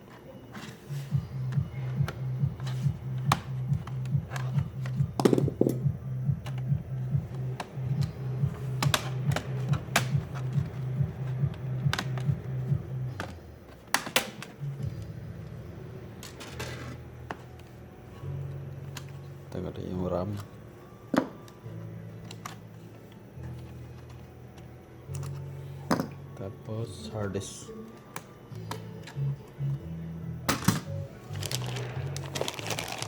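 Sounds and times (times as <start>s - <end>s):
background music with low beat: 0.6s - 33.0s
laptop parts clicking and tapping: 1.5s - 5.8s, 8.8s - 10.8s.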